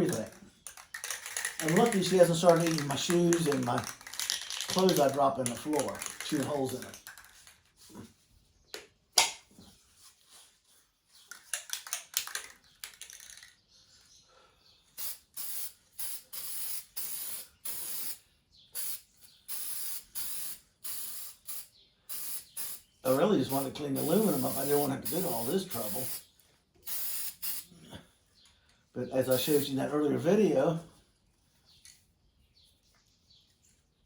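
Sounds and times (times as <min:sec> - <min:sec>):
clicks and rattles: 0:00.0 - 0:07.7, 0:11.2 - 0:13.6
spray can hissing: 0:01.0 - 0:07.2, 0:15.0 - 0:18.2, 0:18.8 - 0:26.2, 0:26.8 - 0:27.7, 0:29.3 - 0:29.7.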